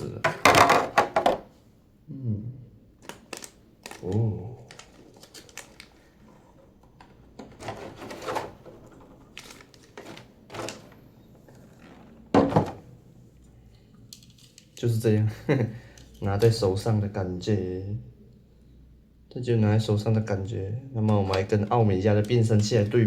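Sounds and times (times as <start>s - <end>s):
plastic toy knock: 0.2s - 1.5s.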